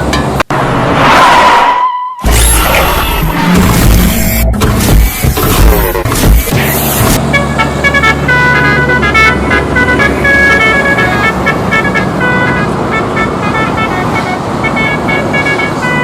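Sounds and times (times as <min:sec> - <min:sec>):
traffic noise: 0:00.0 - 0:16.0
musical air horn melody: 0:07.1 - 0:16.0.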